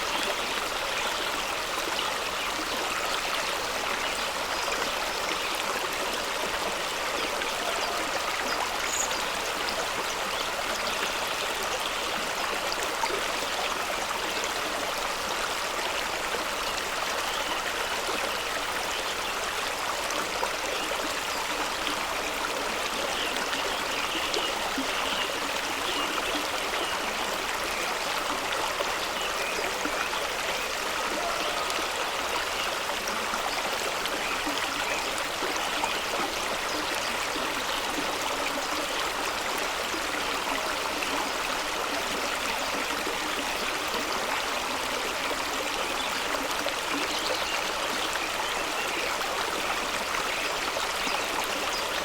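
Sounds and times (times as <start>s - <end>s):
stream rushing over rocks: 0.0s - 52.0s.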